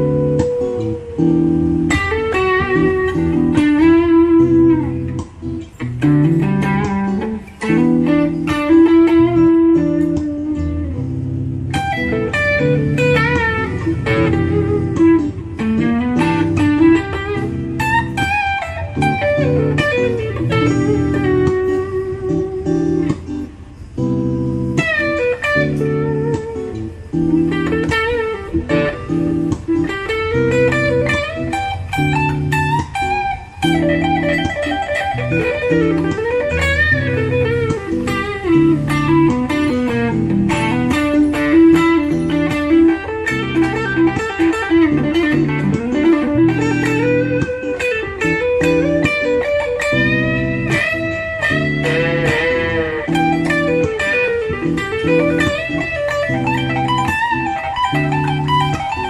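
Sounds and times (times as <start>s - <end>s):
guitar through old amplifier: 0.0s - 59.0s.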